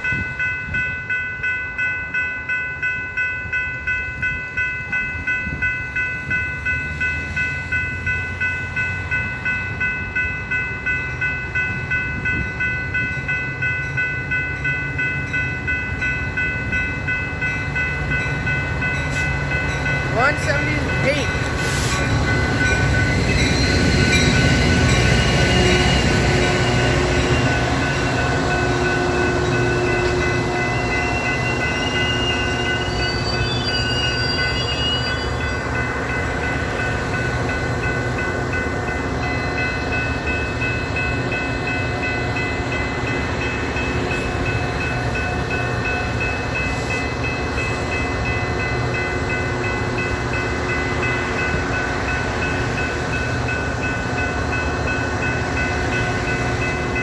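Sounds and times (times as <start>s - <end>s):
diesel locomotive engine drone: 0.0s - 57.0s
high wheel squeal: 21.5s - 26.8s, 30.5s - 35.6s.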